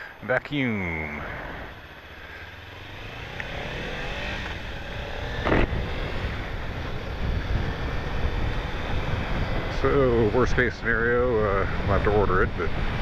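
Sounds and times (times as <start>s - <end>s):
motorcycle engine running: 0.0s - 13.0s
wind noise: 3.5s - 13.0s.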